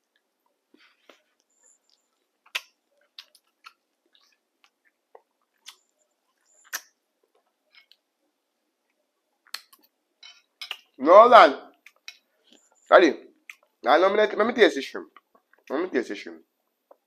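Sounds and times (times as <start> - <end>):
person chewing crunchily: 0.1 - 6.9
mouth clicks: 1.9 - 5.9, 6.6 - 7.0, 9.4 - 9.9.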